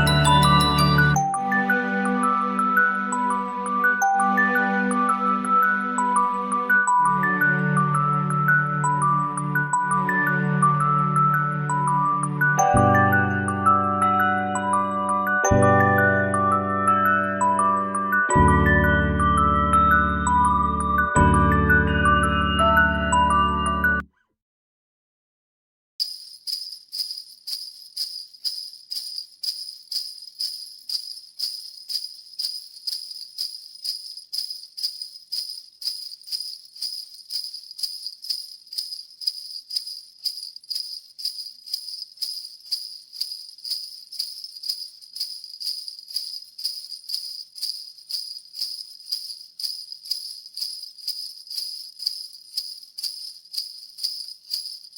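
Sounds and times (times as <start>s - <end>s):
sleigh bells shaken: 0.0s - 1.4s, 26.0s - 54.9s.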